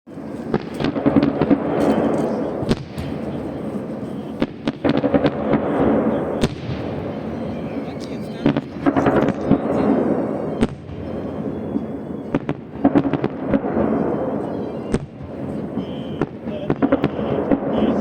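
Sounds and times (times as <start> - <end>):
firework bangs: 0.1 - 18.0
fireworks crackle and rumble: 0.1 - 18.0.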